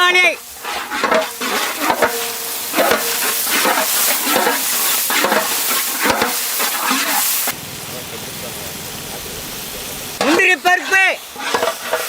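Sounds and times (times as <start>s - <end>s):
onions and tomatoes sizzling in oil: 0.0s - 12.0s
spoon scraping the pan: 0.4s - 7.5s, 10.2s - 12.0s.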